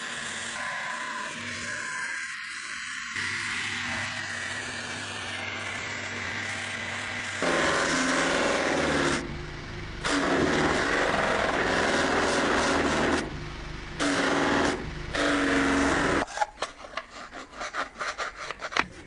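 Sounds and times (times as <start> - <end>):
power tool cutting steel: 0.0 - 9.3, 10.0 - 13.3, 14.0 - 16.3.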